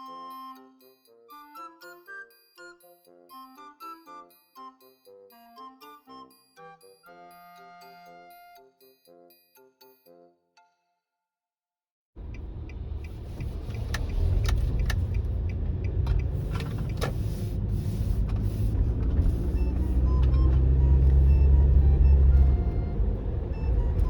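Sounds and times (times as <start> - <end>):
low engine drone: 12.2 - 24.0
vehicle road noise: 12.2 - 24.0.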